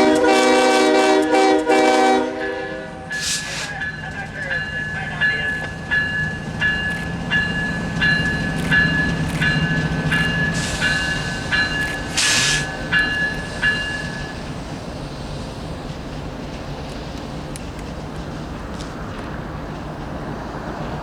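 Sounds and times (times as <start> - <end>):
diesel locomotive rumble: 0.0 - 21.0
railroad crossing bell ringing: 2.2 - 16.4
brief hiss: 3.2 - 3.8, 12.0 - 13.7.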